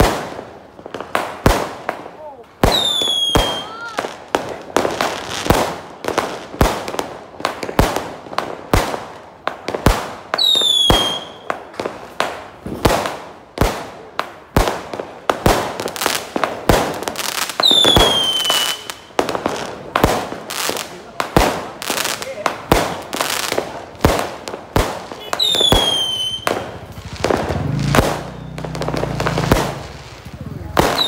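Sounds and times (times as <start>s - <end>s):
firework bangs: 0.0s - 31.0s
firework crackling: 0.0s - 31.0s
descending firework whistle: 2.7s - 3.9s, 10.4s - 11.5s, 25.2s - 30.0s.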